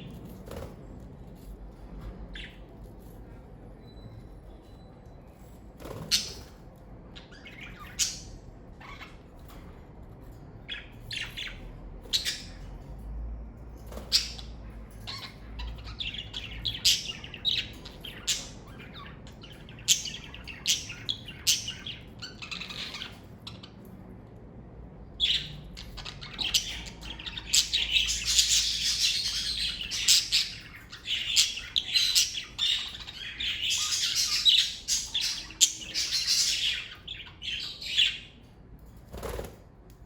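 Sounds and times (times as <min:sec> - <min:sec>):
budgerigars chirping: 0:05.9 - 0:06.6, 0:14.0 - 0:23.8, 0:25.2 - 0:38.3.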